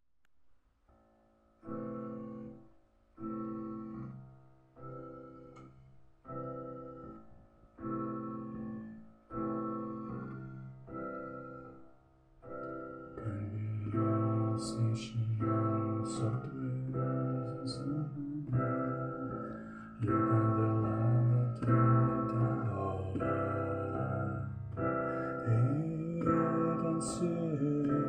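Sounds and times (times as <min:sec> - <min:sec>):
slow piano chords: 0:00.9 - 0:28.0
song: 0:13.1 - 0:28.0.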